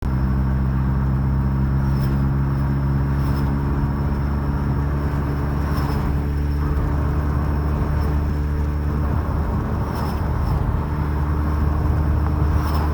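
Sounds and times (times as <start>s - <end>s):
car engine running: 0.0s - 12.9s.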